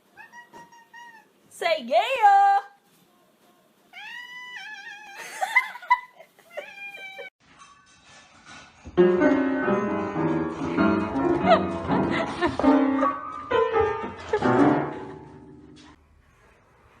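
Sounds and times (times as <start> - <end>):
cat meowing: 0.1 - 1.3, 3.9 - 5.2, 6.5 - 7.3
piano music: 8.9 - 16.0.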